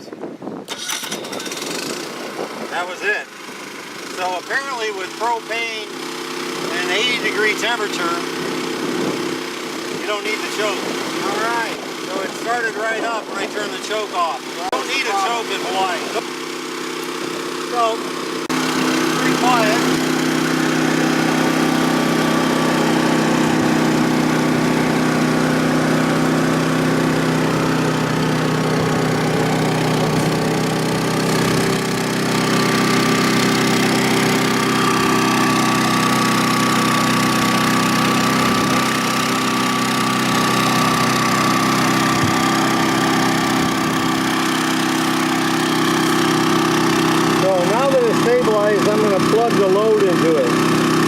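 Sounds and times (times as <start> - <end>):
generator running: 0.0 - 51.0.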